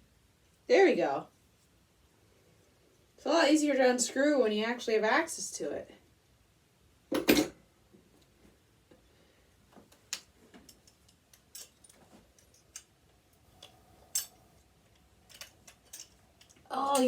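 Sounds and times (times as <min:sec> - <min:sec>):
loose parts clattering: 0:09.9 - 0:17.0.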